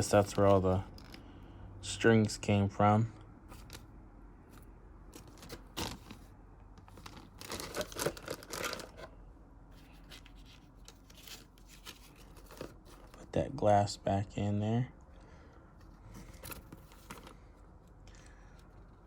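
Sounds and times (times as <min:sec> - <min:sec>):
plastic bag crinkling: 0:06.9 - 0:09.0.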